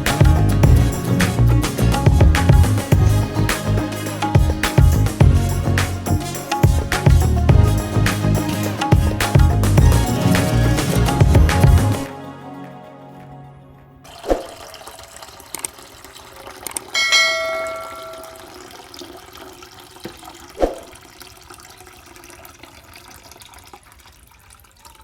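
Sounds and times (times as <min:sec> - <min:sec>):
water trickling and dripping: 0:14.1 - 0:25.0
short ringing tone: 0:17.0 - 0:18.6.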